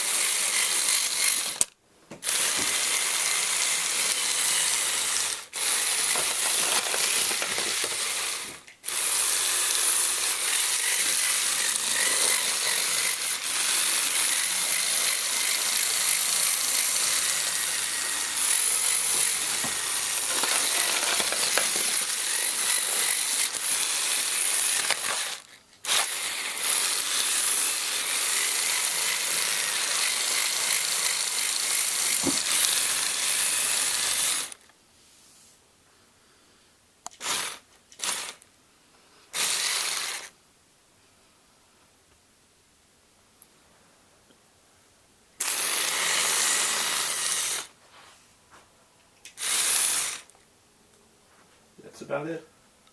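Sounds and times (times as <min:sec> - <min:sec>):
toy motors and tracks whirring: 0:00.0 - 0:34.7, 0:37.0 - 0:38.5, 0:39.3 - 0:40.4, 0:45.4 - 0:47.8, 0:49.2 - 0:50.4.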